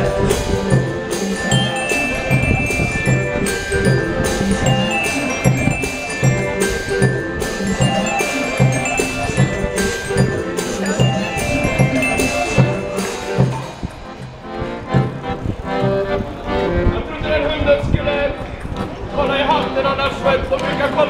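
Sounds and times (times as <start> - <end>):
chiming mallet notes: 0.0 - 13.8
low bass notes: 0.0 - 17.3.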